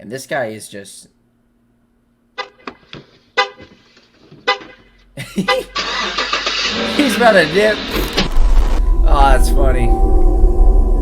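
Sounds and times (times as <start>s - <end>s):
vehicle horn tooting: 2.4s - 2.7s, 3.4s - 3.8s, 4.4s - 5.9s.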